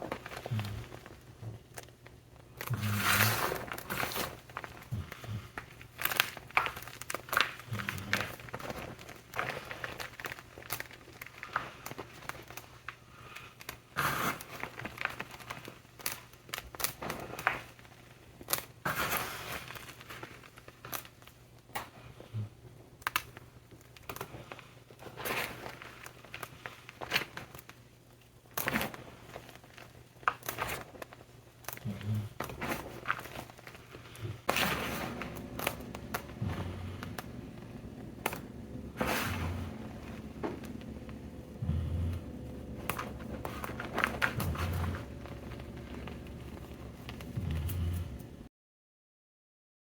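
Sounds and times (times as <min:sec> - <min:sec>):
chalk blocks crunching: 0:02.6 - 0:10.2, 0:31.8 - 0:48.4.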